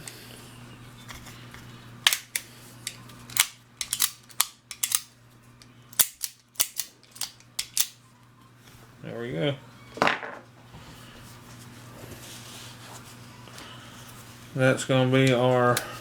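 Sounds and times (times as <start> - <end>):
revolver hammer and cylinder clicks: 2.1 - 5.1, 5.9 - 8.0.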